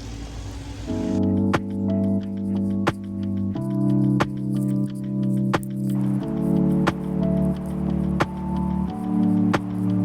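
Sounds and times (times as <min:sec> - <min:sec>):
sustained keyboard chords: 0:01.0 - 0:10.0.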